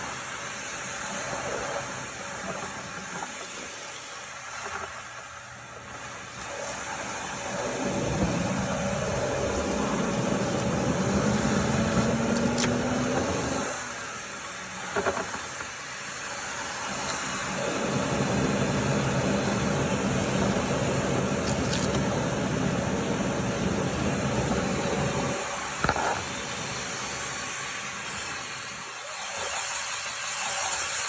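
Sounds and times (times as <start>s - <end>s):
motor pitch climbing: 4.6s - 15.8s
rush of air from vent cleaner: 6.5s - 31.0s.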